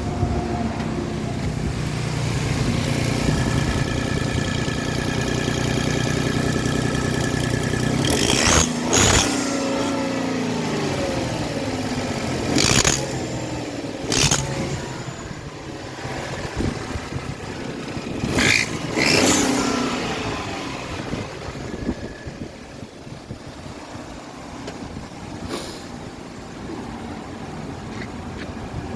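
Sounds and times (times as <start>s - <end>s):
truck engine revving: 0.0s - 22.3s.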